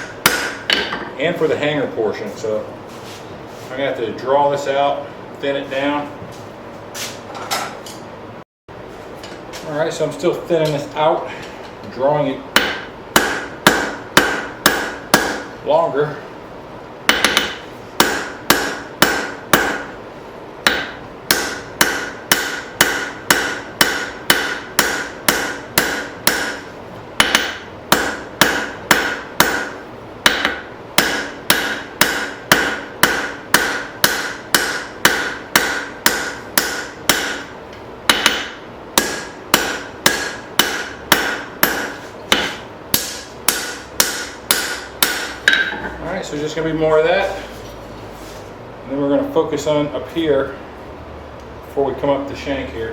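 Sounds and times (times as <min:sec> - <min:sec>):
hammer striking steel on anvil: 0:00.0 - 0:01.1, 0:12.6 - 0:15.5, 0:17.1 - 0:20.0, 0:20.6 - 0:46.0.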